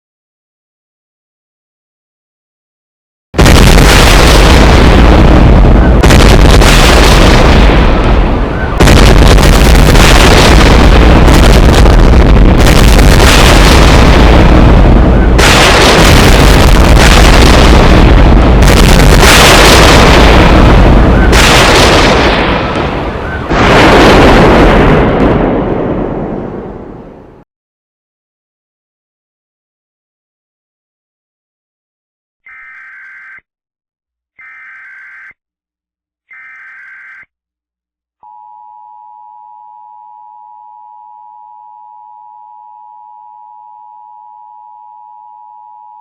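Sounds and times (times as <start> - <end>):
loud explosions: 3.4 - 27.4.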